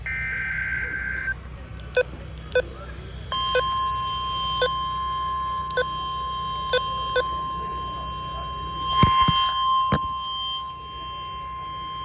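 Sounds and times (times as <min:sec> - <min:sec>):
short sharp beeps: 0:01.8 - 0:02.6, 0:04.5 - 0:04.8, 0:05.6 - 0:05.9, 0:06.6 - 0:07.3.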